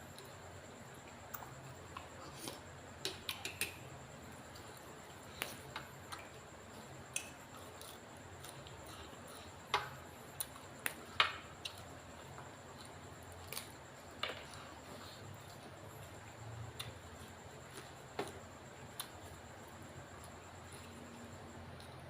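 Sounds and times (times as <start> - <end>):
chewing food: 0.1 - 22.0.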